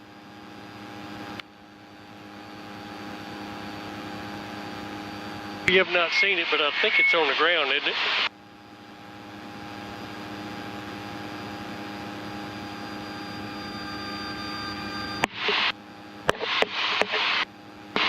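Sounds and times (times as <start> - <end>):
radio static bursts: 5.7 - 8.3, 15.2 - 18.0.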